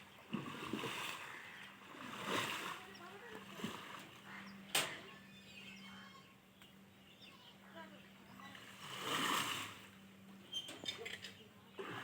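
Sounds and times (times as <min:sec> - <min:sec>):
water splashing and sloshing: 0:00.0 - 0:05.1, 0:08.4 - 0:10.0, 0:10.8 - 0:12.0.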